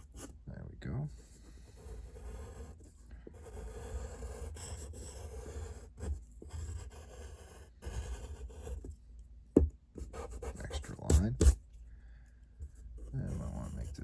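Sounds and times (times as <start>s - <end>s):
drawing tool scratching paper: 1.2s - 8.9s, 10.0s - 11.6s, 13.0s - 14.0s.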